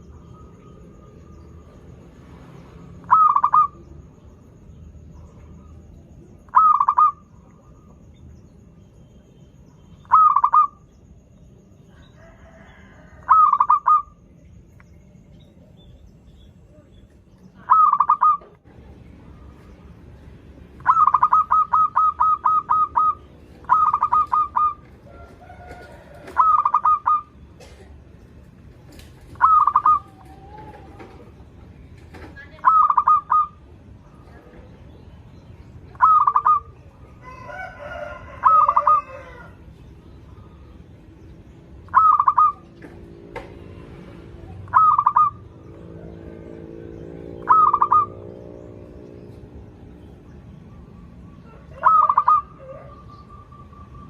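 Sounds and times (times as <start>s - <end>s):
dove cooing trilled phrases: 3.0s - 3.9s, 5.2s - 8.0s, 10.0s - 10.9s, 13.2s - 14.2s, 17.6s - 18.7s, 20.7s - 27.8s, 28.9s - 31.4s, 32.5s - 34.5s, 35.9s - 37.3s, 38.0s - 39.6s, 41.8s - 42.8s, 44.5s - 46.7s, 47.3s - 49.8s, 50.7s - 54.0s.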